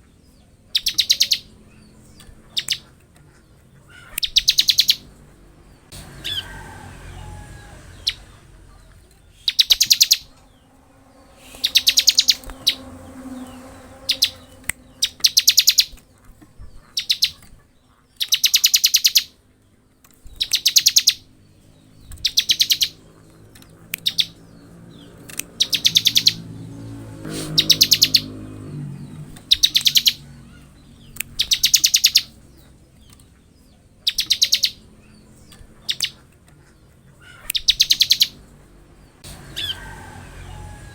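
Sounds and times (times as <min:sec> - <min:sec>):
bird buzzing trill: 0:09.5 - 0:16.0.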